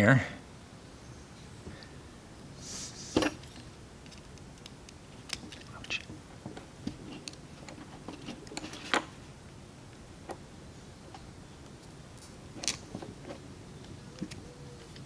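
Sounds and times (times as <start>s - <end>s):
rustle: 0.0s - 15.0s.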